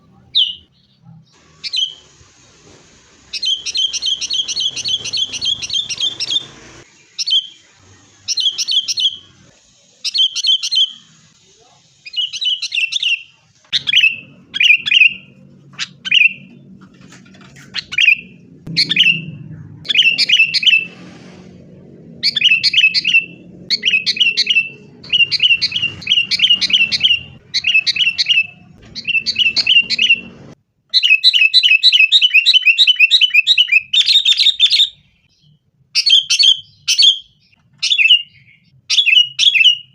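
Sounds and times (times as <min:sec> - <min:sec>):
bulbuls chattering calls: 0:22.2 - 0:30.6.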